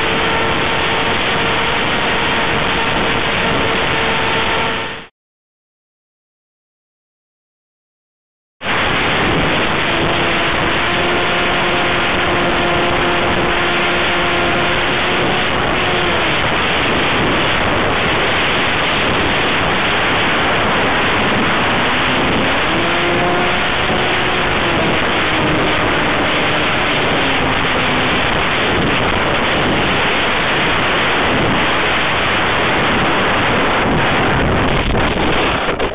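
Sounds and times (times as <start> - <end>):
wind rushing across microphone: 0.0 - 5.1, 8.6 - 35.9
electric motor whining: 9.4 - 18.3, 21.2 - 29.8.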